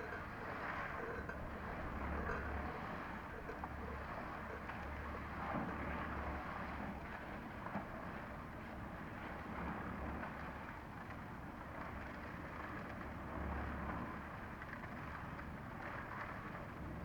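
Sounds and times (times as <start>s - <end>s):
low engine-like rumble: 0.0s - 6.5s.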